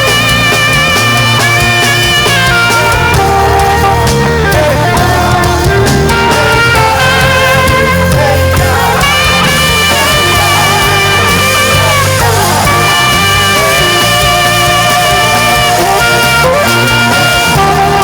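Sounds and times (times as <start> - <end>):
backing band playing: 0.0 - 18.0
saxophone melody: 0.0 - 18.0.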